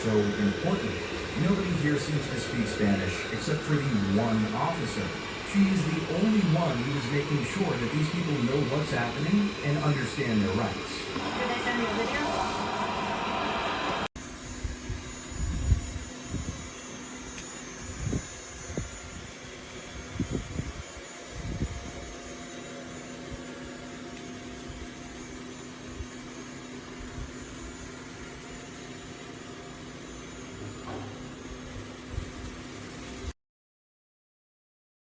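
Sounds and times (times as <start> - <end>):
robot vacuum motor hum: 0.0 - 14.1.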